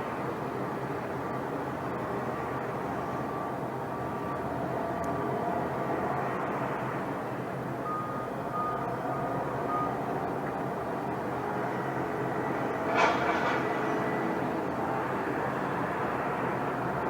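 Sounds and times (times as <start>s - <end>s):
rumble of vehicle noise: 0.0s - 17.0s
reversing alarm beeps: 7.8s - 10.1s.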